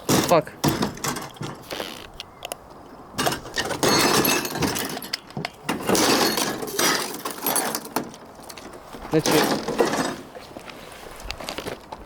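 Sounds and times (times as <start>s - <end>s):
hard plastic parts clicking and rattling: 0.0s - 10.7s.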